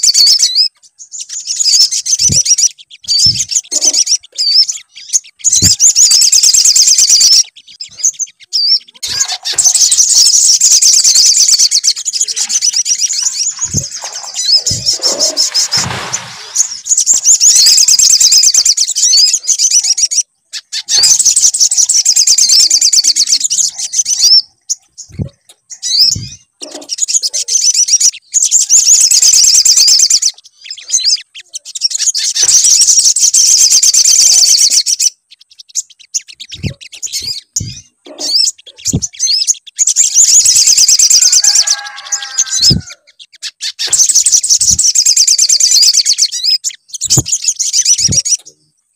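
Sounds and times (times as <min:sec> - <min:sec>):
fast high chattering bird trills: 0:00.0 - 0:48.7
low thumps: 0:13.5 - 0:17.2.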